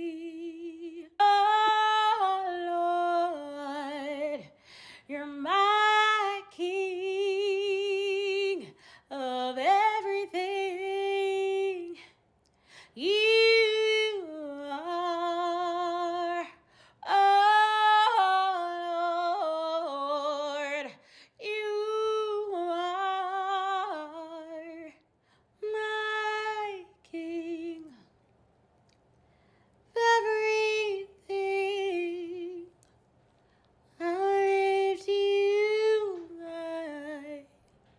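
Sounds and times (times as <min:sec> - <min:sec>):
woman singing unaccompanied: 0:00.0 - 0:12.2, 0:13.0 - 0:25.0, 0:25.6 - 0:28.1, 0:29.9 - 0:32.8, 0:34.0 - 0:37.6.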